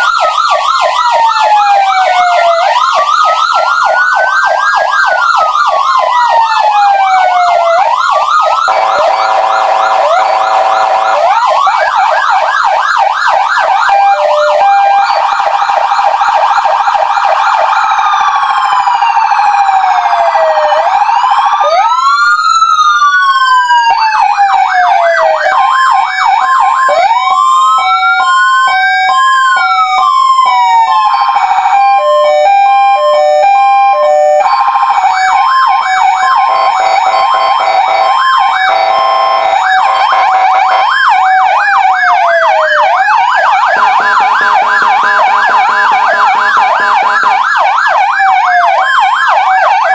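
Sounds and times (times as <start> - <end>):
electronic sirens yelping and wailing: 0.0 - 49.9
low siren horn tone: 42.0 - 47.5.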